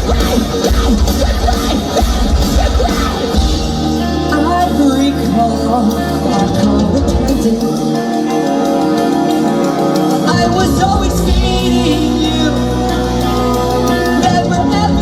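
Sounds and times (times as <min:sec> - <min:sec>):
bass line: 0:00.0 - 0:08.2, 0:10.2 - 0:15.0
drums with busy cymbals: 0:00.0 - 0:15.0
live rock band playing loudly: 0:00.0 - 0:15.0
person singing: 0:00.0 - 0:15.0.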